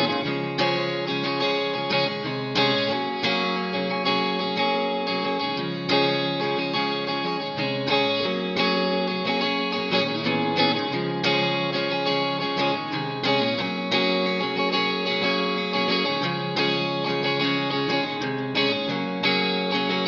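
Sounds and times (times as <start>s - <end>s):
guitar background music: 0.0s - 20.0s.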